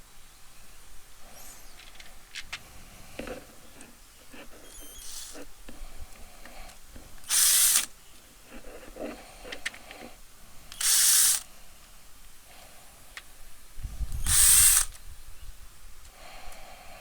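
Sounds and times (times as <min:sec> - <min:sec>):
electric screwdriver whirring: 0:04.6 - 0:05.5, 0:07.2 - 0:08.0, 0:10.7 - 0:11.5, 0:14.2 - 0:15.0
clicks and knocks of handling parts: 0:09.4 - 0:10.9.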